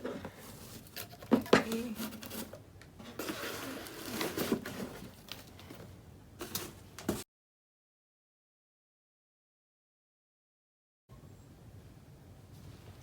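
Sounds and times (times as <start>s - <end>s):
paper packaging rustling: 0.0s - 7.2s.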